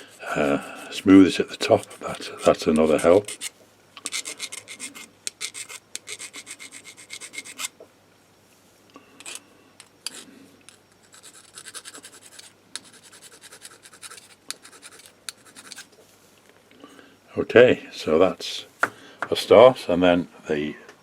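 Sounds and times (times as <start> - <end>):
hand file rasping: 0.0 - 7.7, 11.1 - 15.9.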